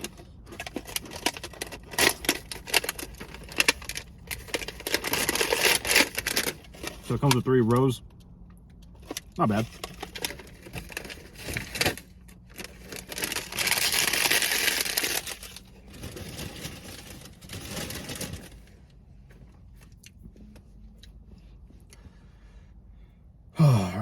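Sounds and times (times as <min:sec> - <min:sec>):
plastic packaging crinkling: 0:00.0 - 0:07.4, 0:09.0 - 0:18.7.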